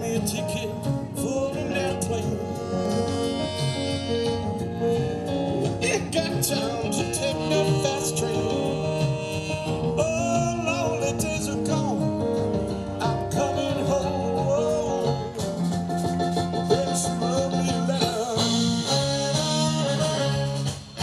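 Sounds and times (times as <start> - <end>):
man singing: 0.0 - 15.7, 16.6 - 21.0
guitar: 0.0 - 21.0.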